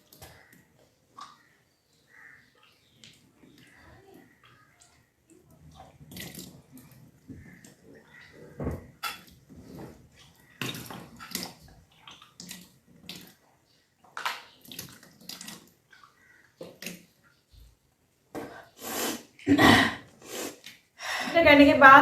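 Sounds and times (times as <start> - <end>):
water vomited in splashing gushes: 3.6 - 9.1.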